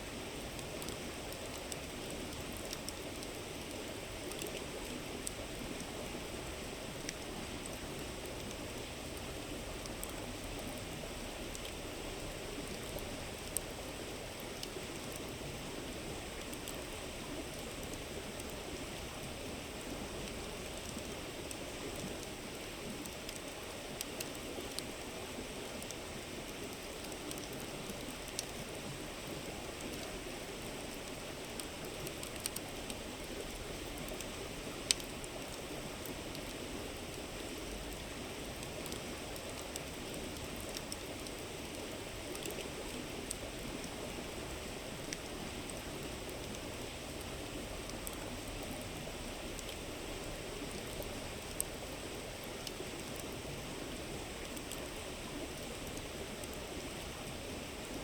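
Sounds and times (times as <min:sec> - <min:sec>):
campfire crackling and popping: 0:00.4 - 0:05.9, 0:30.7 - 0:44.2.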